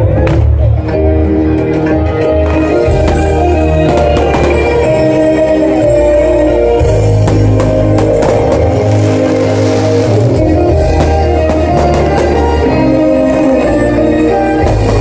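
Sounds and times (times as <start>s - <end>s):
fireworks bursting: 2.6s - 5.4s, 6.8s - 15.0s
loud music with heavy bass: 6.5s - 15.0s.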